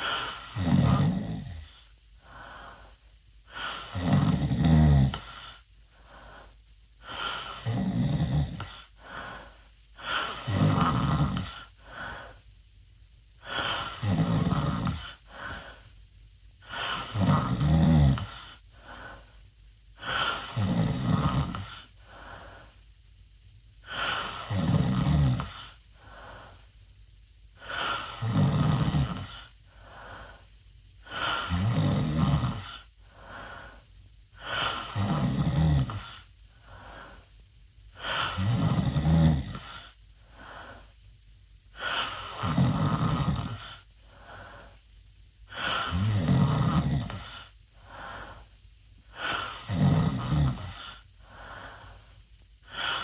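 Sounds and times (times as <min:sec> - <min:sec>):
boy snoring loudly: 0:00.0 - 0:01.8, 0:03.5 - 0:05.6, 0:07.0 - 0:08.9, 0:10.0 - 0:11.7, 0:13.4 - 0:15.3, 0:16.6 - 0:18.6, 0:20.0 - 0:21.9, 0:23.8 - 0:25.8, 0:27.6 - 0:29.5, 0:31.0 - 0:32.9, 0:34.4 - 0:36.3, 0:38.0 - 0:40.0, 0:41.8 - 0:43.9, 0:45.5 - 0:47.5, 0:49.1 - 0:51.0, 0:52.6 - 0:53.0
soft breath out: 0:39.5 - 0:41.1, 0:43.5 - 0:44.9, 0:47.1 - 0:49.7, 0:50.6 - 0:53.0.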